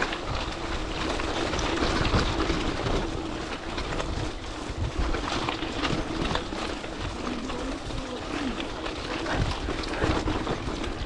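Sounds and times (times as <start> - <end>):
bike clicks and rattles: 0.0 - 11.0
bike tyres rumbling on rough ground: 0.0 - 11.0.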